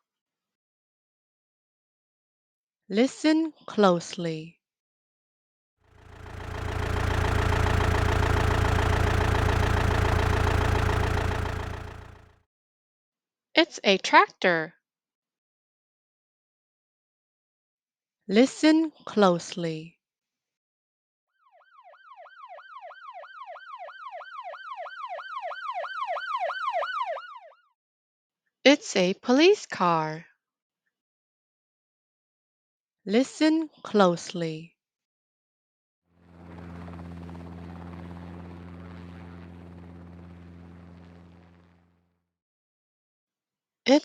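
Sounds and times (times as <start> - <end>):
tractor engine running: 6.0 - 12.3, 36.3 - 42.0
police siren yelping: 6.1 - 12.2, 21.4 - 27.6.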